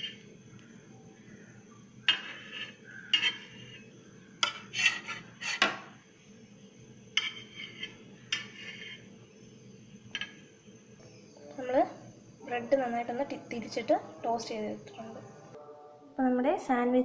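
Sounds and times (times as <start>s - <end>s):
utensil scraping a pan: 0.0s - 0.3s, 2.0s - 6.0s, 7.2s - 9.1s.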